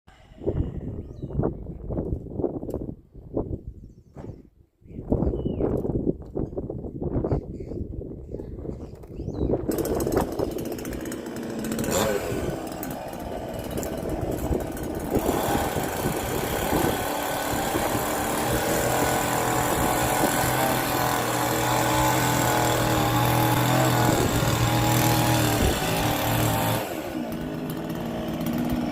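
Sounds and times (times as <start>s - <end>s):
small engine running: 9.7s - 28.9s.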